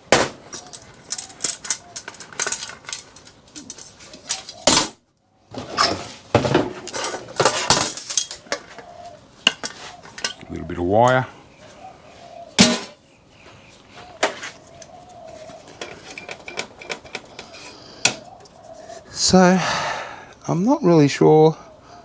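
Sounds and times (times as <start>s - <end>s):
metal parts and tools clattering: 0.5s - 5.0s, 5.6s - 8.8s, 9.5s - 10.4s, 12.6s - 13.0s, 15.8s - 17.7s
sharp metallic knocks: 12.6s - 13.0s.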